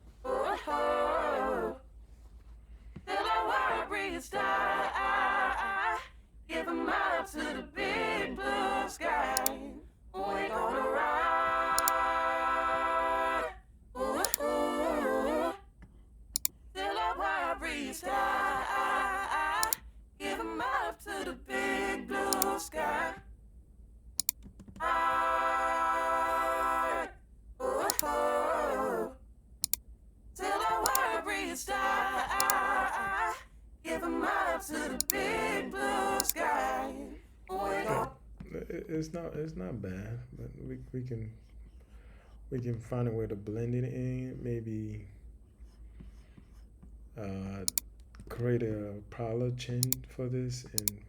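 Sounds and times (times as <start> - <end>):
person singing unaccompanied: 0.0 - 1.8, 3.1 - 15.7, 16.8 - 23.2, 24.8 - 29.2, 30.4 - 38.2.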